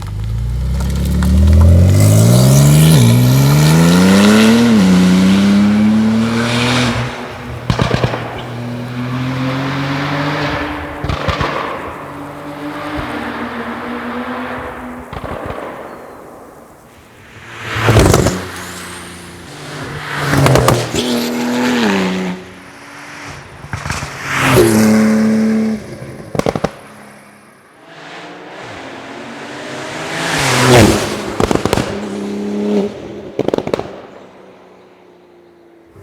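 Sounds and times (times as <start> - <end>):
exhaust crackling pops: 0.0 - 13.8, 14.5 - 19.2, 19.8 - 21.3, 23.3 - 24.9, 25.9 - 27.2, 30.7 - 32.4, 33.2 - 34.2
car engine revving: 0.0 - 15.9, 16.6 - 33.8.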